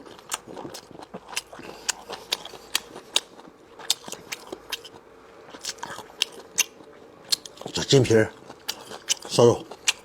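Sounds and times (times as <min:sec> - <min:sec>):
chewing and crunching meat: 0:00.0 - 0:10.0.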